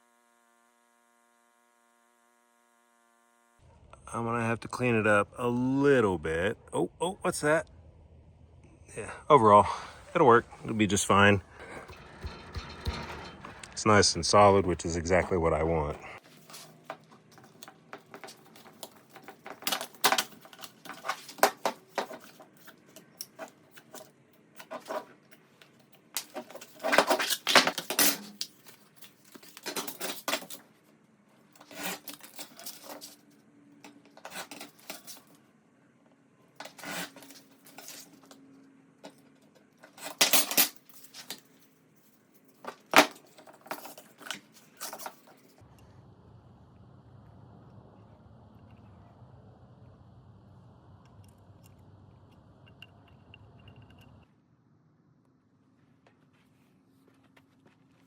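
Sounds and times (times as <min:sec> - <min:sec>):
metal tools clinking: 0:16.4 - 0:30.7, 0:31.6 - 0:33.2, 0:39.8 - 0:41.7, 0:42.3 - 0:45.6.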